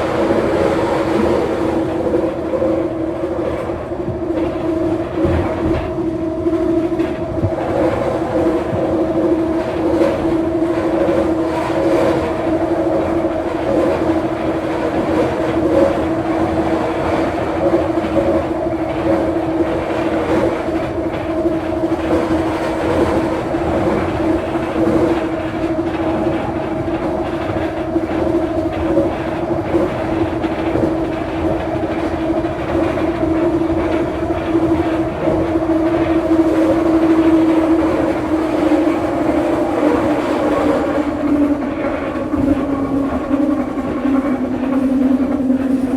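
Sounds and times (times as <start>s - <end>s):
steel wheels rumbling on rails: 0.0s - 45.9s
train motor hum: 19.5s - 45.9s.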